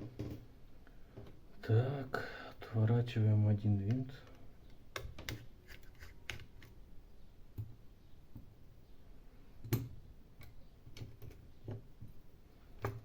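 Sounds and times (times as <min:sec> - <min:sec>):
small tools clicking and tapping: 0:09.6 - 0:12.2.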